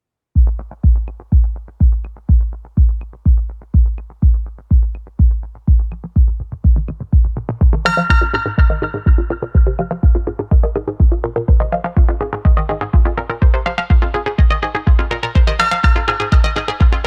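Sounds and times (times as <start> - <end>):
deep kick drum: 0.4 - 17.0
bright synth chord: 7.9 - 10.4.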